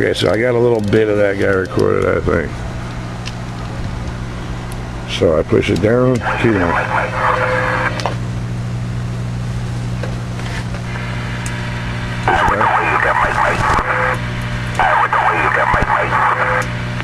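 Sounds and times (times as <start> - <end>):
radio speaker hum: 0.0 - 17.0
thin voice over radio: 6.2 - 8.0, 12.3 - 14.2, 14.8 - 16.7.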